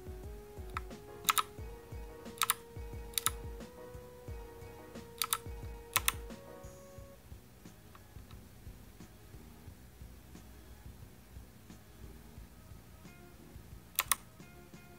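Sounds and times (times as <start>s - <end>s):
mechanical keyboard key clicks: 1.2s - 1.5s, 2.3s - 3.4s, 5.2s - 6.3s, 14.0s - 14.2s.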